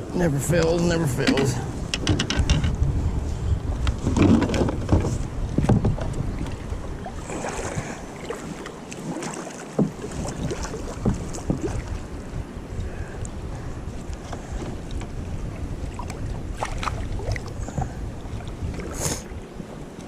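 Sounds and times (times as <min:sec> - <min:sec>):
water against kayak hull: 0:00.0 - 0:20.0
wind rumbling on microphone: 0:00.0 - 0:20.0
knocks and bumps: 0:01.2 - 0:02.8.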